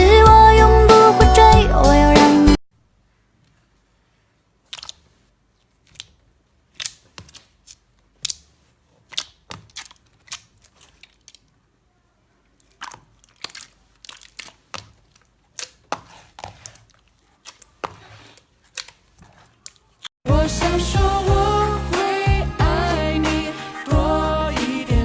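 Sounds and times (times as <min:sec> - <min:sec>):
slime popping and crackling: 0:05.8 - 0:11.6, 0:12.6 - 0:20.1.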